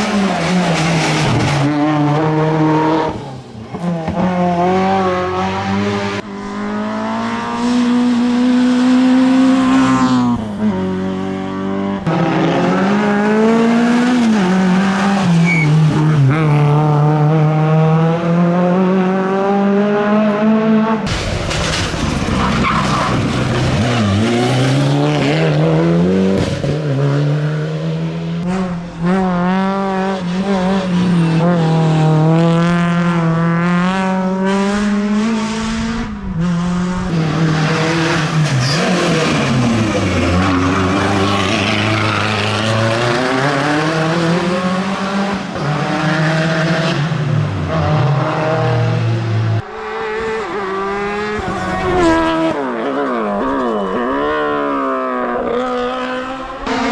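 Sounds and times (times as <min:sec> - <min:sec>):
race car engine accelerating: 0:00.0 - 0:56.9.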